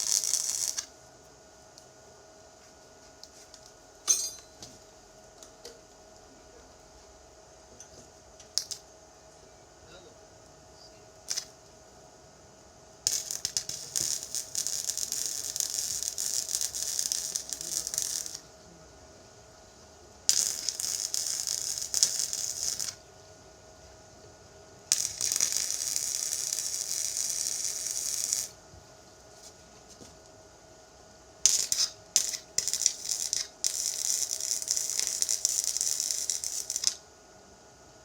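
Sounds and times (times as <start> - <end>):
welding arc crackling hiss: 0.0 - 0.9, 8.4 - 8.8, 11.2 - 11.6, 13.1 - 18.5, 20.3 - 23.0, 24.9 - 28.6, 31.4 - 37.0.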